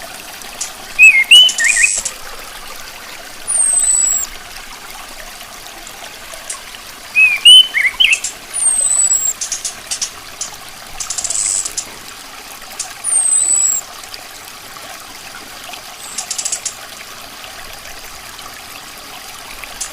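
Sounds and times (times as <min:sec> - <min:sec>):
water trickling: 0:00.0 - 0:19.9
thrush calling: 0:00.9 - 0:02.4, 0:03.5 - 0:04.3, 0:06.5 - 0:11.9, 0:12.8 - 0:13.8.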